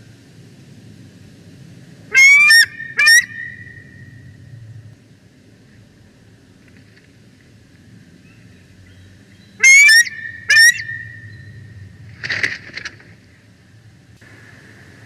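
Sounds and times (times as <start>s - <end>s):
eagle piping calls: 2.1s - 4.3s, 9.5s - 11.7s.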